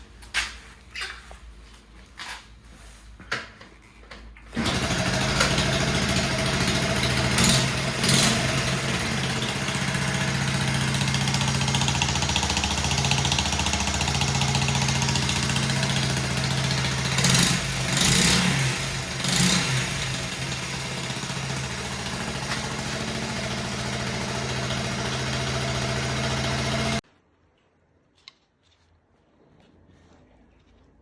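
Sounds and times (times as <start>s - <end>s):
small motorbike engine idling: 4.6s - 27.0s.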